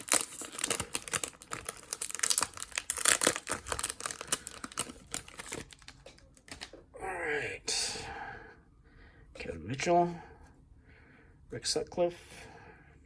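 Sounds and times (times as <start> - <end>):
cards clicking and crinkling: 0.0 - 6.8
cards flicked and shuffled: 4.8 - 6.8.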